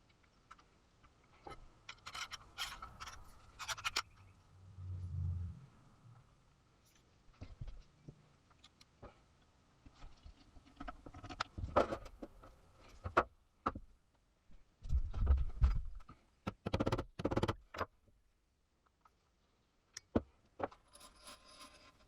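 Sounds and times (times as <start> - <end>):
objects being handled: 0.0 - 4.3.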